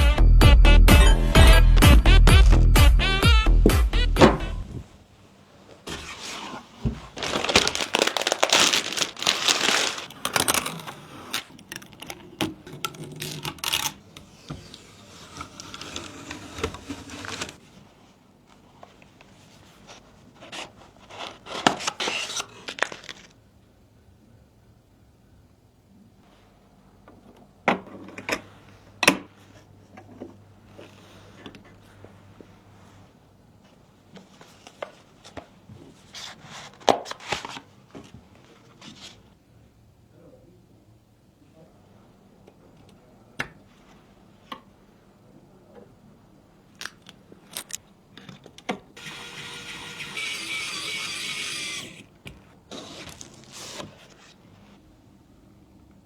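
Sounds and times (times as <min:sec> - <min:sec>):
hard objects clicking and knocking: 0:10.2 - 0:14.1.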